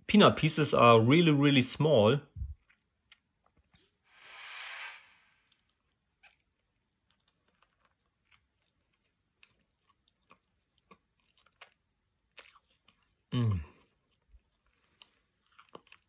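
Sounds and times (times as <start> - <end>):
short hiss: 4.1 - 5.5.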